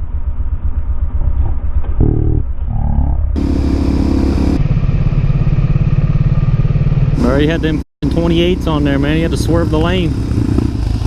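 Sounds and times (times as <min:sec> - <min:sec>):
motorcycle engines revving: 0:03.4 - 0:11.0.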